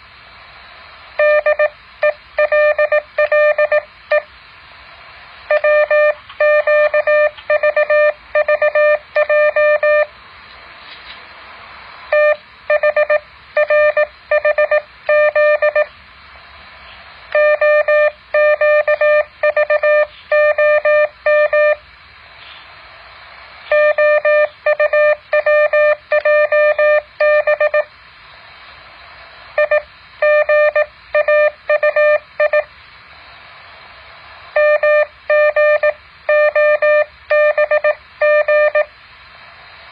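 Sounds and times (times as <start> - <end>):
faint hiss: 0.0 - 2.4, 3.8 - 6.4, 10.1 - 15.0, 15.8 - 17.4, 21.8 - 36.3, 38.8 - 39.9
morse code beeps: 1.2 - 4.3, 5.5 - 10.1, 12.1 - 15.9, 17.3 - 21.8, 23.7 - 27.9, 29.6 - 32.7, 34.6 - 38.9.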